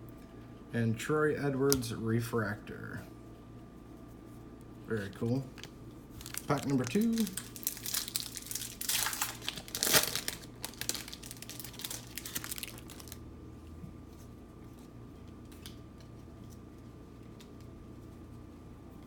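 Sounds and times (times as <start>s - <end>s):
wrapper tearing and crinkling: 5.0s - 13.2s.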